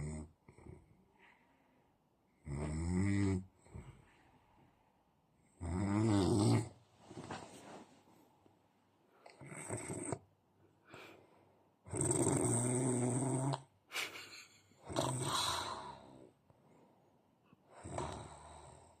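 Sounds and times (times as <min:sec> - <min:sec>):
man snoring: 0:02.4 - 0:03.5, 0:05.6 - 0:06.7, 0:11.9 - 0:13.6, 0:14.8 - 0:16.2, 0:17.8 - 0:19.0.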